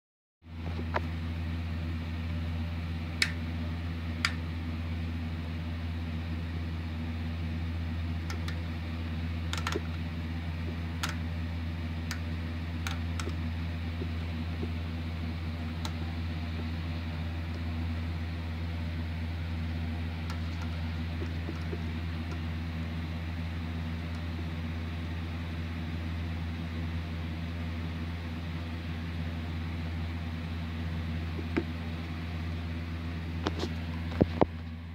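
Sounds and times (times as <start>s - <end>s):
electrical hum of radar equipment: 0.5s - 34.9s
sharp clicks: 9.5s - 10.0s, 11.0s - 11.2s.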